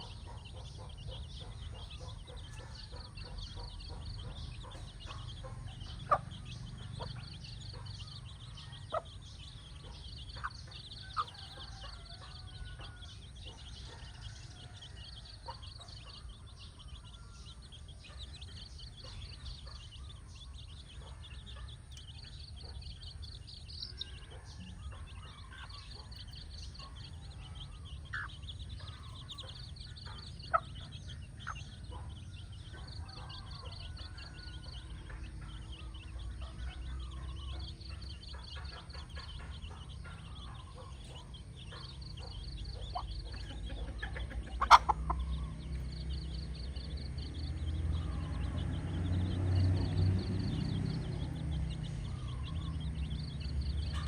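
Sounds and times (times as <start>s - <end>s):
hen clucking: 0.0s - 14.6s, 20.9s - 45.9s
chicks peeping: 0.0s - 54.0s.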